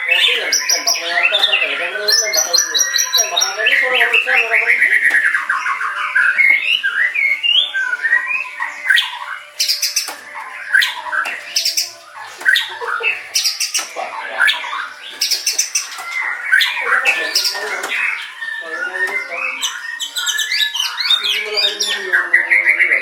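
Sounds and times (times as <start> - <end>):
bird singing whistled phrases: 0.0 - 23.0
bird sharp clicking notes: 8.8 - 18.4.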